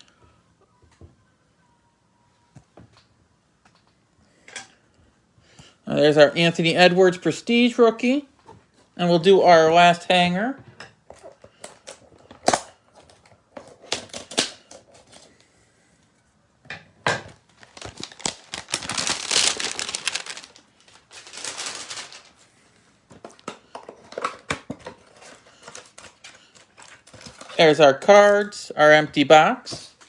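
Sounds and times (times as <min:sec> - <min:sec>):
wrapper crinkling: 0:17.5 - 0:22.4, 0:25.0 - 0:27.8.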